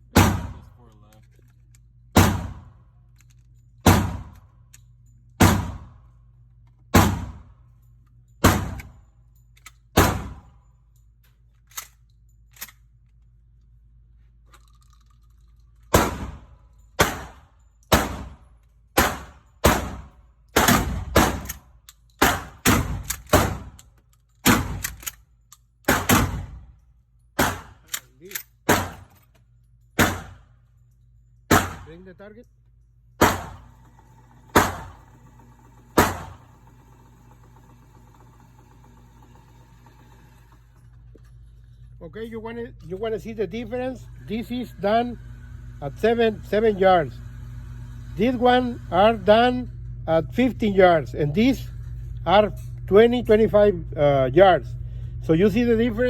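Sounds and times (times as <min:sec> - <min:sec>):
shotgun firing: 0:00.2 - 0:00.7, 0:02.2 - 0:02.7, 0:03.9 - 0:04.4, 0:05.4 - 0:05.9, 0:07.0 - 0:07.5, 0:08.4 - 0:08.9, 0:10.0 - 0:10.5, 0:15.9 - 0:18.4, 0:19.0 - 0:21.6, 0:22.2 - 0:23.8, 0:24.4 - 0:24.9, 0:25.9 - 0:26.6, 0:27.4 - 0:27.8, 0:28.7 - 0:29.1, 0:30.0 - 0:30.4, 0:31.5 - 0:31.9, 0:33.2 - 0:33.7, 0:34.5 - 0:35.0, 0:36.0 - 0:36.4
gunshots with ringing echo: 0:16.0 - 0:18.4, 0:19.0 - 0:21.5, 0:27.4 - 0:27.8, 0:30.0 - 0:30.4, 0:31.5 - 0:31.9, 0:33.2 - 0:33.6.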